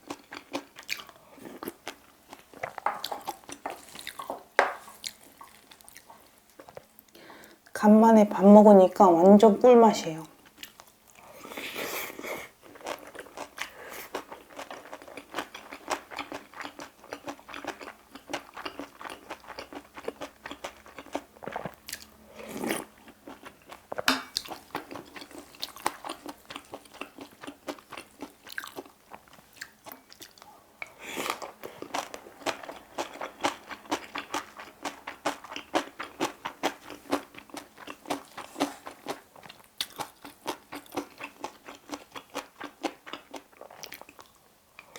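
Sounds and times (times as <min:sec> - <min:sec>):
wet crunchy chewing: 0:00.0 - 0:06.9, 0:12.6 - 0:30.5.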